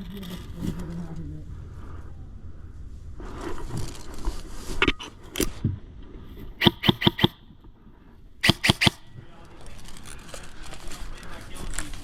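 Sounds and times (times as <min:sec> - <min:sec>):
airsoft guns firing: 0:06.6 - 0:07.4, 0:08.4 - 0:09.1.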